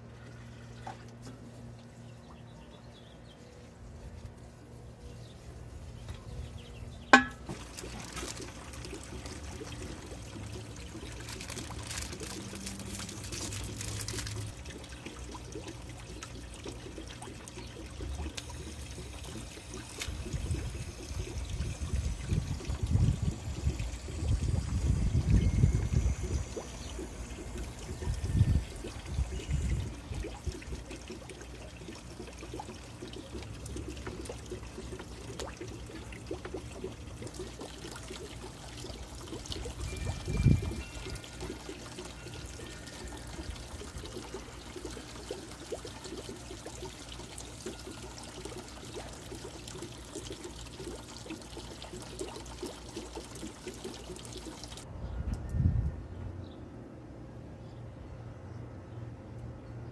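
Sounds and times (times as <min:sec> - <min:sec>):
water trickling and splashing: 0:05.9 - 0:54.9
low buffeting rumbles: 0:20.0 - 0:30.8.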